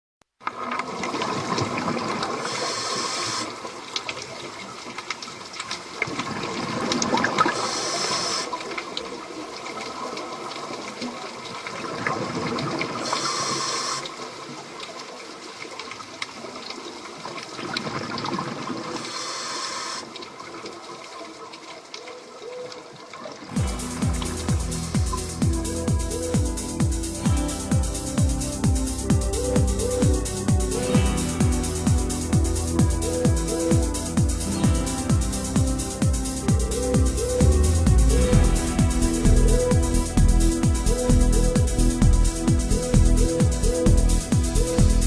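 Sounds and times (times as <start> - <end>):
sea waves washing in: 0.5 - 5.0, 5.6 - 15.6, 23.4 - 43.6.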